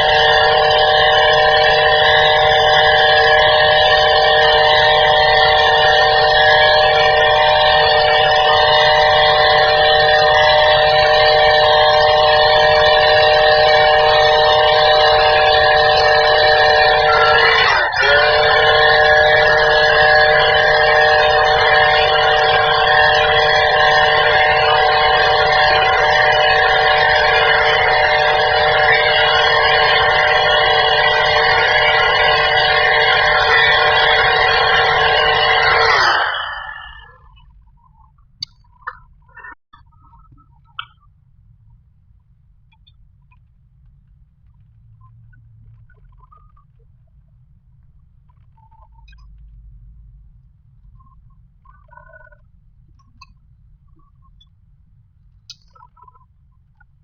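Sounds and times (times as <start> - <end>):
angle grinder motor whining: 0.0 - 37.3.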